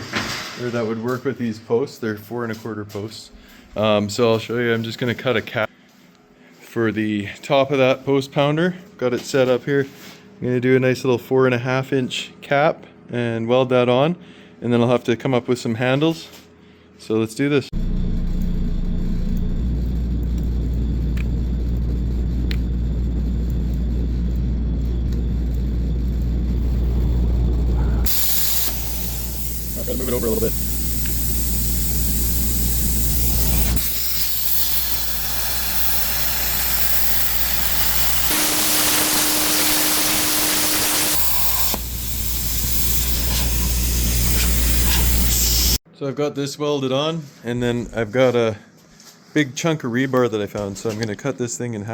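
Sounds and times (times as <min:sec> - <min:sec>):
machine rumble and hum: 0:17.8 - 0:45.8
loud cutting hiss: 0:26.6 - 0:45.8.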